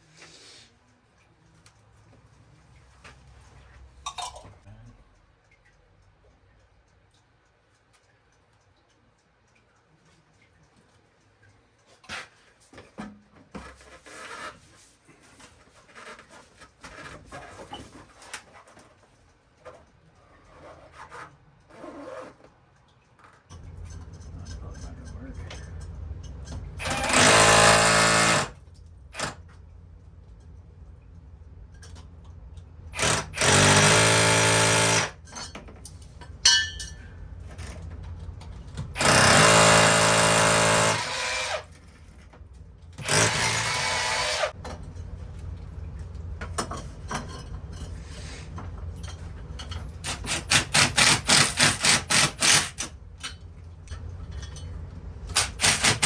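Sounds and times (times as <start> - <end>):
drill trigger pulses: 26.8 - 28.6, 33.0 - 35.2, 39.0 - 41.7, 43.0 - 44.5, 50.1 - 52.8, 55.4 - 56.0
power drill whining: 26.8 - 28.6, 33.0 - 35.1, 39.0 - 41.7, 43.0 - 44.5.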